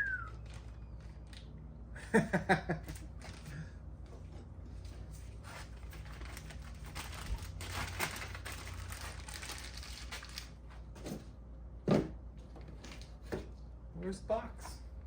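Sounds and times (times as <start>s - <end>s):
packaging crinkling: 5.5s - 10.6s.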